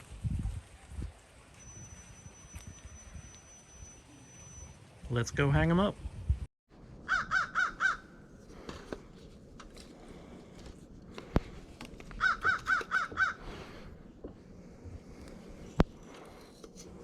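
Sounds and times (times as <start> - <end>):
bird calling: 7.1 - 8.3, 12.1 - 13.8.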